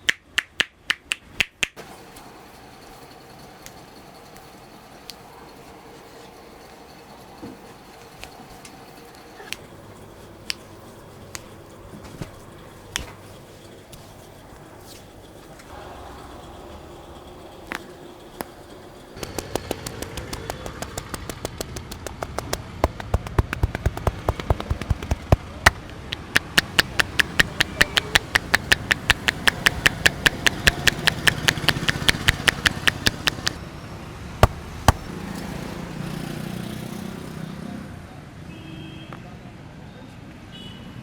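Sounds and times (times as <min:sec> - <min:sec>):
hand slaps on body: 0:00.0 - 0:01.8, 0:19.2 - 0:33.6, 0:34.4 - 0:35.1
sharp strikes: 0:19.2 - 0:33.6.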